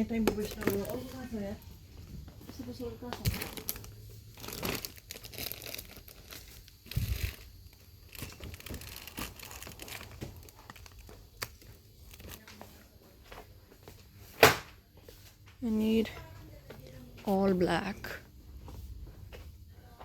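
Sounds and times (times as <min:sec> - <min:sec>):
packaging crinkling and rustling: 0:00.2 - 0:01.5, 0:03.2 - 0:12.8.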